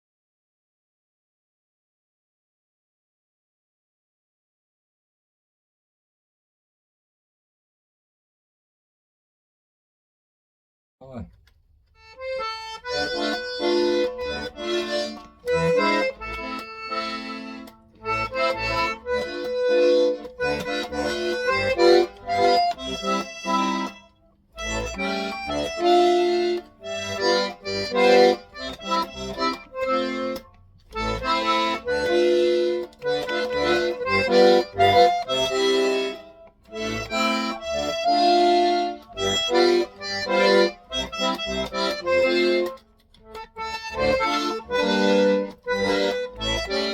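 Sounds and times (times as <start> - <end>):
accordion playing a melody: 12.0 - 46.9.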